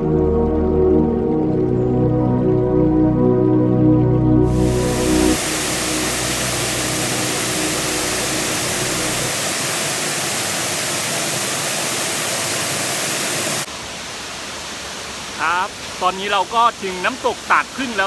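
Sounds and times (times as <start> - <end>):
waterfall rushing: 4.5 - 18.0.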